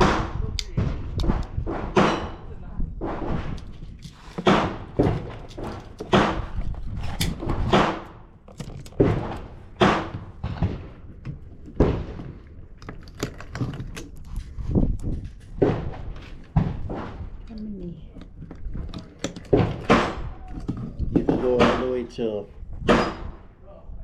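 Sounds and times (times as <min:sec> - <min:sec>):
gunshots with echo: 0:09.1 - 0:11.0.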